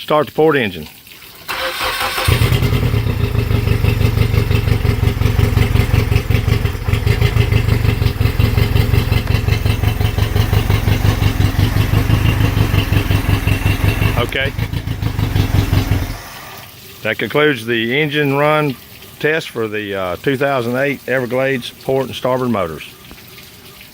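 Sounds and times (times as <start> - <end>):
starter cranking: 1.5 - 16.6
outboard motor idling: 1.5 - 16.7.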